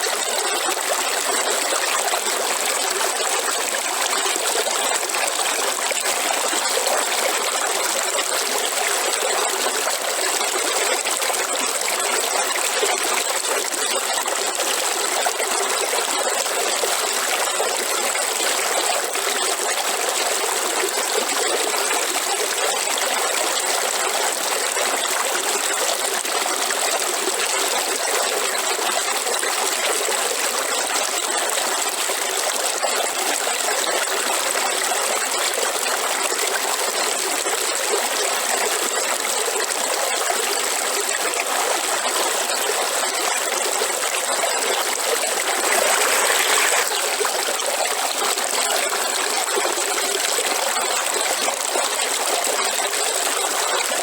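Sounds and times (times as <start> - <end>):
river water flowing: 39.4 - 54.0.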